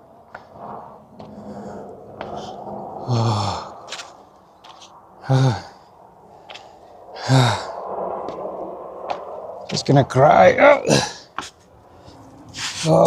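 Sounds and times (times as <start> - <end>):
person sighing heavily: 3.0 - 4.0, 5.2 - 5.8, 7.2 - 7.8, 10.8 - 11.3.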